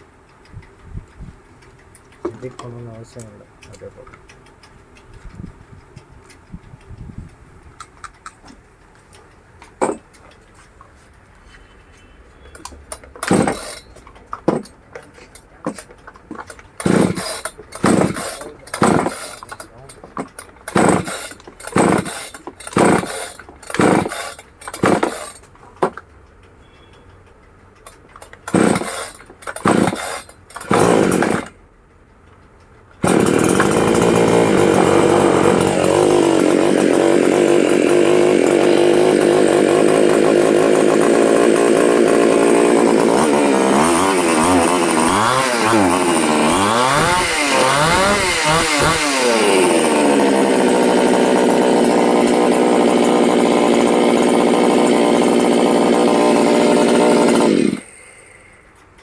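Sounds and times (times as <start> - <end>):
starter cord pulls: 7.8 - 10.7, 12.6 - 27.0, 27.8 - 31.6, 32.4 - 58.3
chainsaw engine running and revving: 13.2 - 13.8, 15.7 - 19.6, 20.2 - 25.4, 28.5 - 31.5, 33.0 - 58.4.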